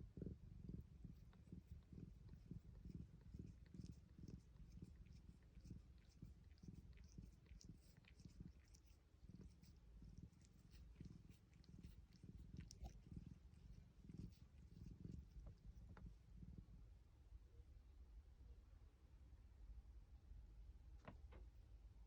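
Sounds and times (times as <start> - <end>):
cat purring: 0.0 - 17.4.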